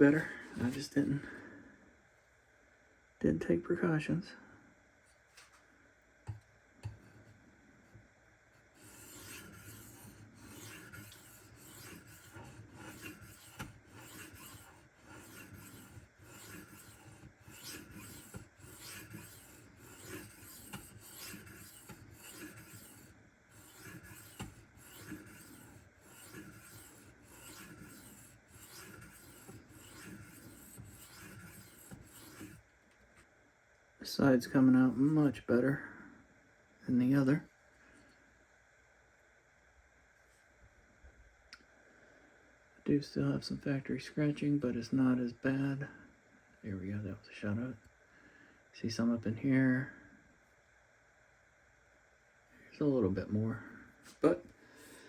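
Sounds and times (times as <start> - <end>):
knife scraping on whetstone: 8.7 - 32.6.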